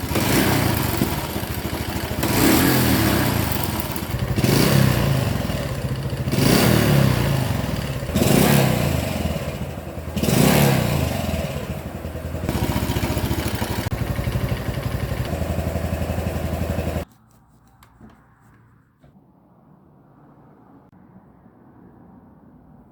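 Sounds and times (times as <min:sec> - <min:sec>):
motorcycle engine revving: 0:00.0 - 0:17.1.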